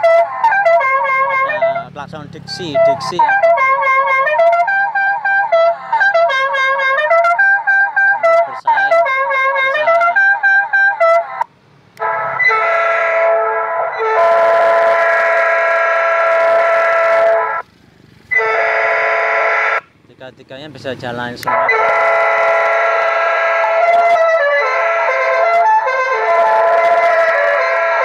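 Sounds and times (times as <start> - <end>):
electronic horn melody: 0.0 - 17.6, 18.3 - 19.9, 21.5 - 28.0
steady train horn chord: 12.0 - 17.6, 18.3 - 19.8, 21.5 - 28.0.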